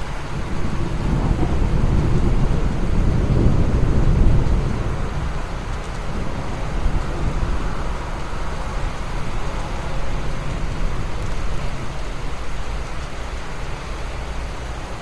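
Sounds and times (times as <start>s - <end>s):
rain falling: 0.0s - 15.0s
deep rumble: 0.4s - 12.2s.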